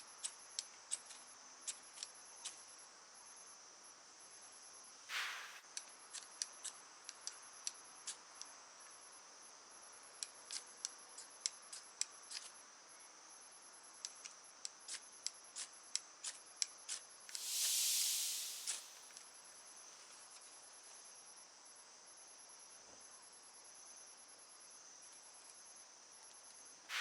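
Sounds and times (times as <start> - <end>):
insects chirring: 5.1 - 5.6, 17.3 - 19.2
short rush of noise: 5.1 - 5.6, 17.4 - 19.2
campfire wood crackling: 17.4 - 19.0.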